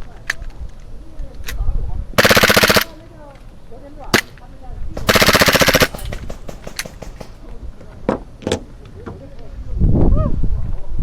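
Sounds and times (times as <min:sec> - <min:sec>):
airsoft gun shots: 0:02.2 - 0:02.9, 0:05.0 - 0:07.5.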